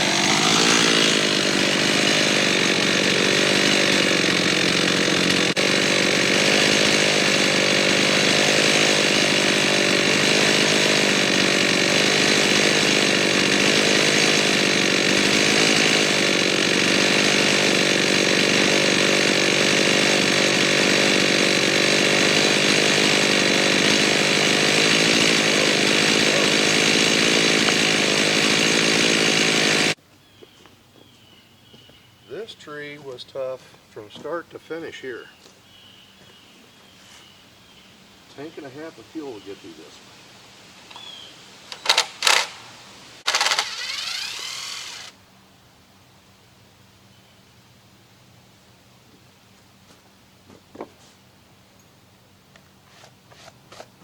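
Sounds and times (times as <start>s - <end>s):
chainsaw cutting log at full throttle: 0.0s - 30.0s, 41.7s - 45.2s.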